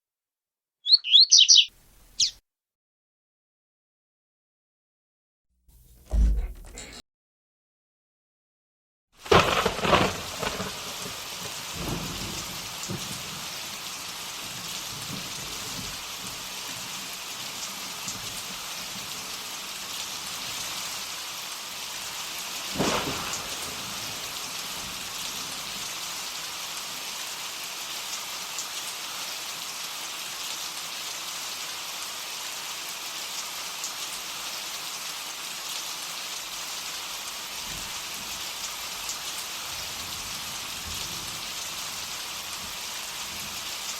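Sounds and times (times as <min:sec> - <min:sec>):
sharp thunderclap: 0:09.2 - 0:13.5, 0:22.7 - 0:25.7
thunder rumbling: 0:09.2 - 0:13.6, 0:22.7 - 0:25.8
heavy rain: 0:09.2 - 0:43.9.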